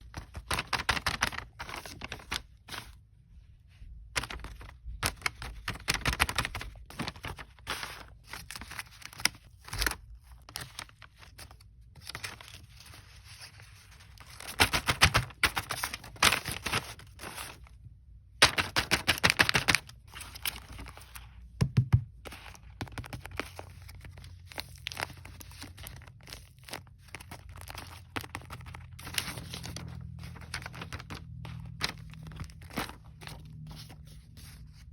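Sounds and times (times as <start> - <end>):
plastic packaging crinkling: 0.1 - 2.9, 18.4 - 21.3, 22.3 - 34.8.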